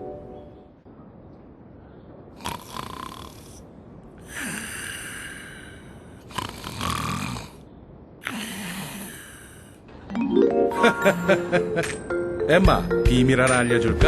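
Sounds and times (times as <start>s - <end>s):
rasping snoring: 2.4s - 3.6s, 6.2s - 7.6s.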